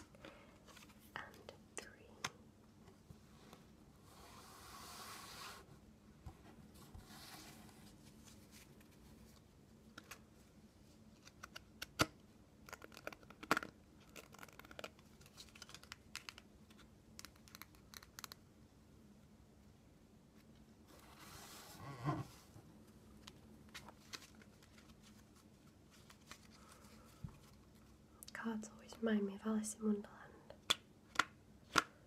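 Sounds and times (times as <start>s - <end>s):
playing cards sliding: 4.1s - 5.7s, 21.0s - 22.4s
rustle of cards: 12.7s - 18.4s, 23.2s - 27.9s.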